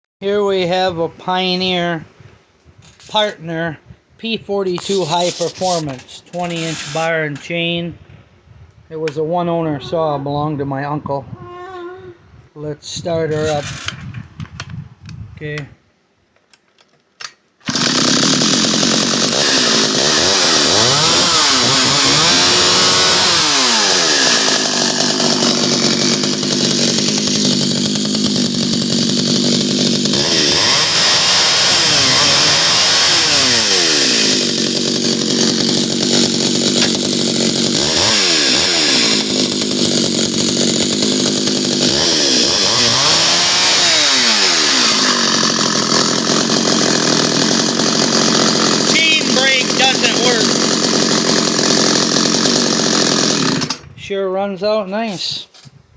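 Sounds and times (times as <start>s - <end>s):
chainsaw engine revving: 4.8s - 7.5s, 17.6s - 53.9s.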